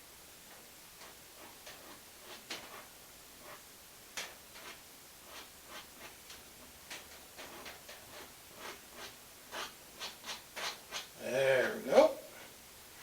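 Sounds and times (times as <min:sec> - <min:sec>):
palette knife scratching on canvas: 0:01.0 - 0:11.2.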